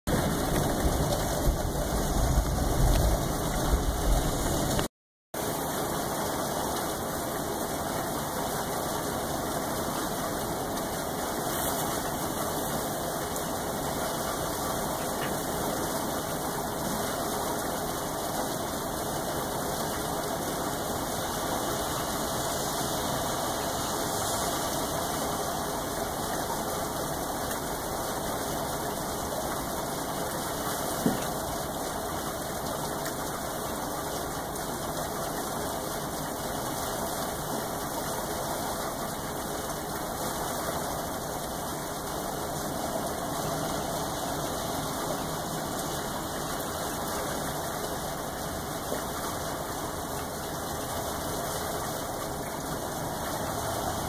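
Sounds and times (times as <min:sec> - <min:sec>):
steady rain falling: 0:00.1 - 0:54.0.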